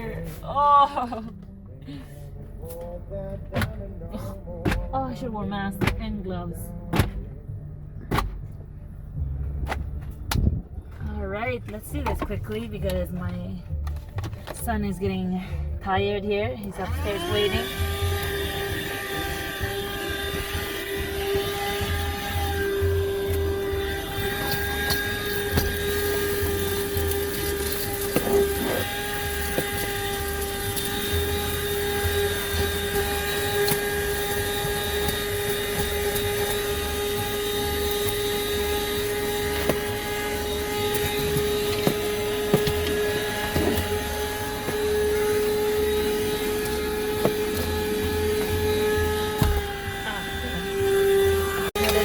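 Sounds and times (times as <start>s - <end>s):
handheld vacuum motor whine: 16.7s - 52.0s.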